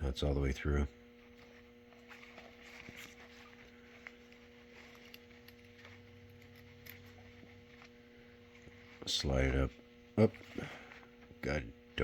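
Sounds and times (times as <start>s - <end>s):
steady electrical hum: 0.0s - 12.0s
cord and wire clicks and rustles: 1.3s - 8.0s.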